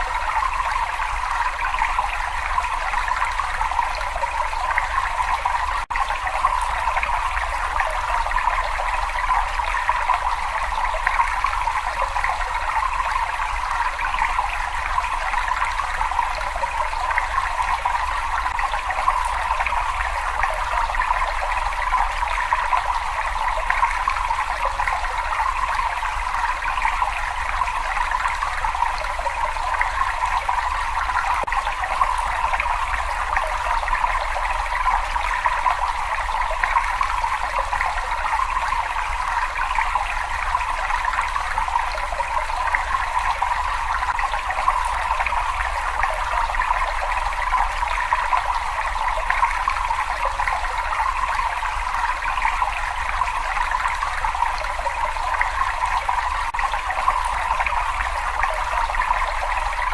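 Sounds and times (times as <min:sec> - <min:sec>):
water trickling and splashing: 0:00.0 - 0:59.9.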